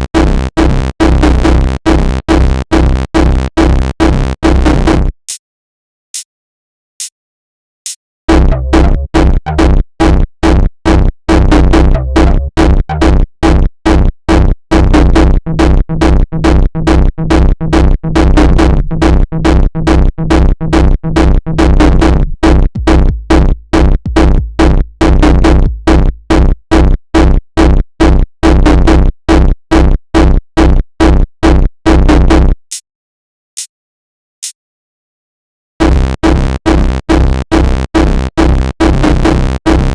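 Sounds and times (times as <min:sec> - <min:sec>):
electronic kick-drum and bass beat: 0:00.0 - 0:05.4, 0:08.3 - 0:29.1, 0:35.8 - 0:39.9.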